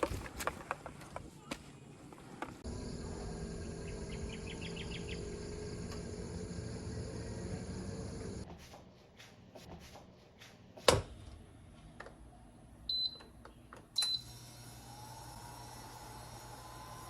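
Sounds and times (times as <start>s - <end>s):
microwave oven humming: 2.6s - 8.4s, 12.8s - 17.0s
keypad beeps: 12.9s - 13.3s.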